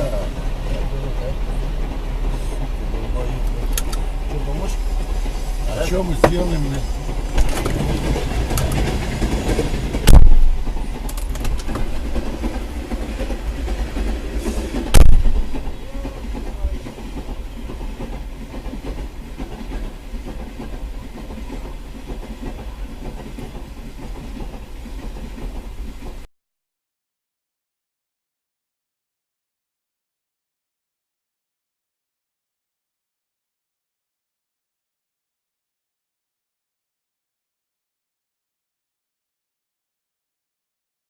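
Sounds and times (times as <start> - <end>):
train rumbling and clattering: 0.0 - 26.3.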